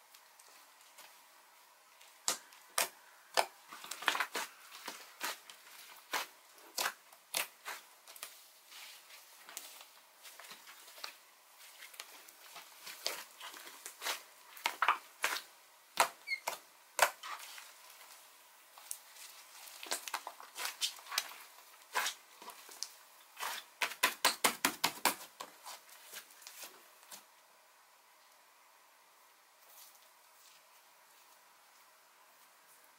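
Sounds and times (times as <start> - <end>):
clay slime squished by hand: 2.0 - 18.1, 18.7 - 27.2.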